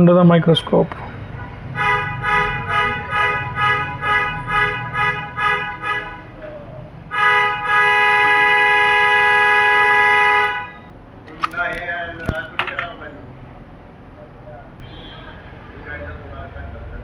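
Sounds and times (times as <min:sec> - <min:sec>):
horn tooting: 0:01.3 - 0:06.5, 0:07.1 - 0:10.9, 0:14.8 - 0:15.6
long horn blast: 0:01.4 - 0:06.4, 0:07.1 - 0:10.9.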